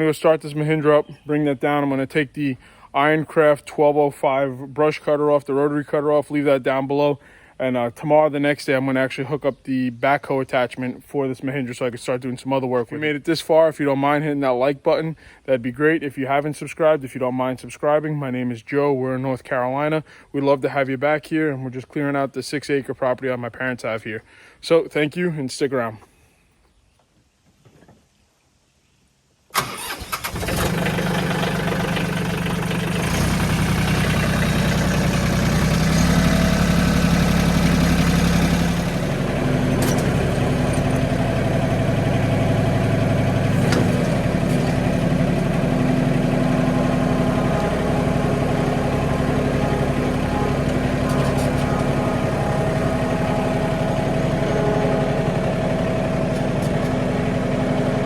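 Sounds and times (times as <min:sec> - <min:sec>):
tractor diesel engine starting: 0:00.0 - 0:10.8, 0:29.6 - 0:58.0.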